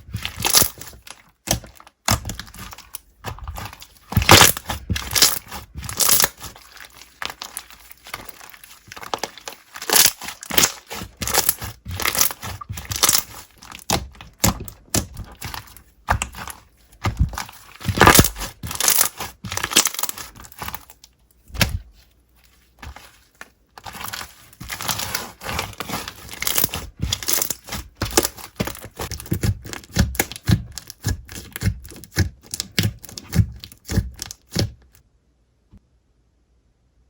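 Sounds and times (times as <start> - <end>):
slime crackling and squishing: 0.0 - 34.9.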